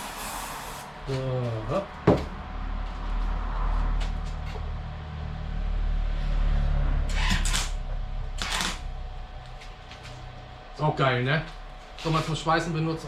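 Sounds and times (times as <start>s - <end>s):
welding arc crackling: 7.1s - 8.9s.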